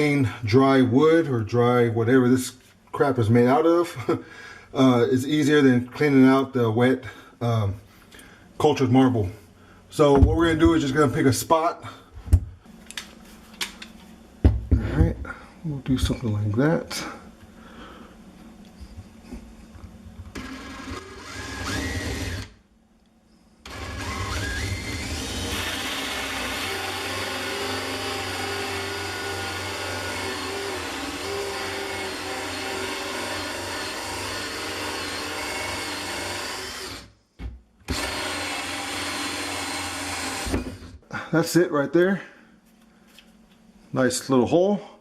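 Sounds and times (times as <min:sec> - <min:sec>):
drill hole saw cutting countertop: 0:20.3 - 0:22.6, 0:23.6 - 0:37.1, 0:37.9 - 0:40.9.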